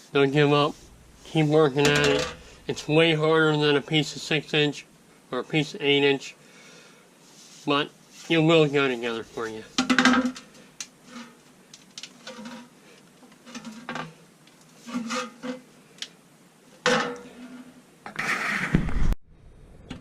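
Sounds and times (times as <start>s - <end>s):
metal pipe clanking and scraping: 0.8s - 3.1s, 12.2s - 12.7s, 13.4s - 14.1s, 14.8s - 15.6s.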